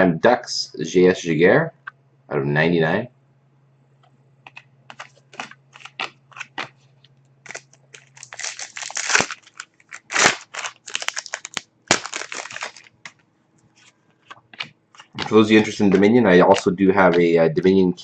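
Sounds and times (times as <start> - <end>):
foil wrapper crinkling and tearing: 4.9 - 6.7, 7.4 - 13.2.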